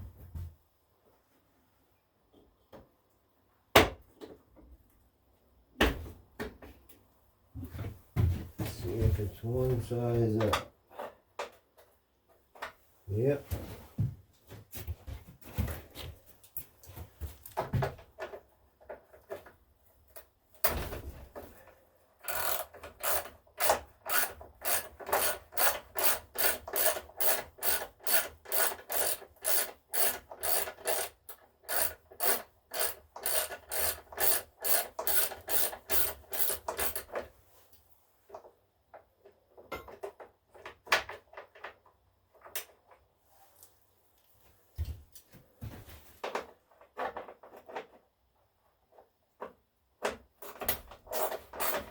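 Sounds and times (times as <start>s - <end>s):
ratchet wrench cranking: 22.2s - 37.1s, 51.1s - 51.9s.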